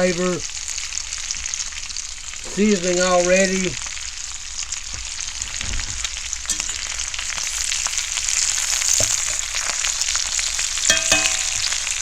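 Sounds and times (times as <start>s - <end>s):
food sizzling in skillet: 0.0s - 12.0s.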